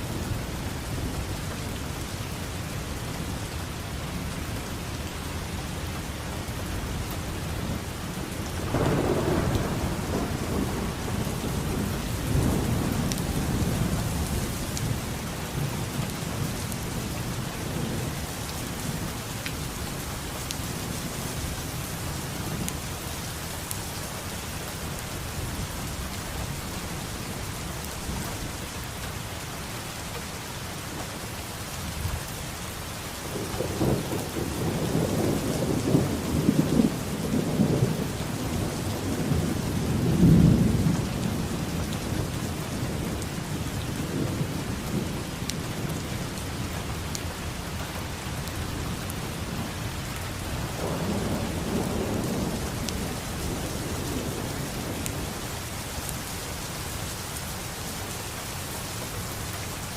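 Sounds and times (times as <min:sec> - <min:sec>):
steady rain: 0:00.0 - 0:59.9
thunder rolling: 0:08.7 - 0:14.5, 0:50.8 - 0:55.4.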